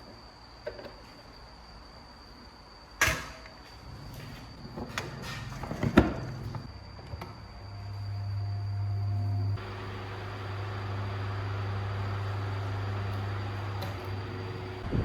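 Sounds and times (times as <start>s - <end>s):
electric motor hum: 7.7s - 15.0s.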